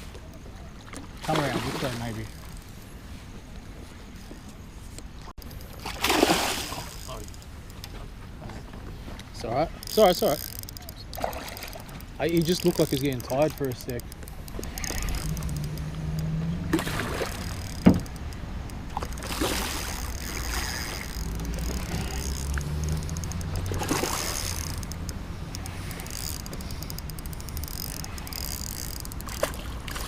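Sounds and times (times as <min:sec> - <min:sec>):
water splashing: 0:00.8 - 0:02.6, 0:05.4 - 0:07.6, 0:09.7 - 0:30.0.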